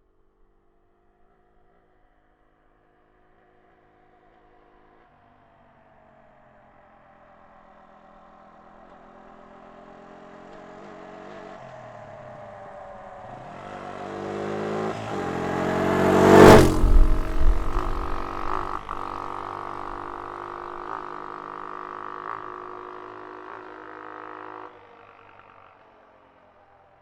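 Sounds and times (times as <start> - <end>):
quad bike engine revving: 13.7 - 21.0.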